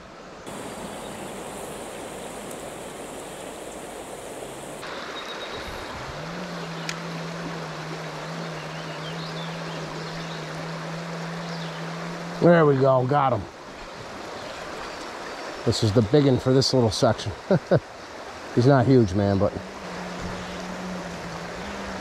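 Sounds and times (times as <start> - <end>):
creek running over rocks: 0.4 - 22.0.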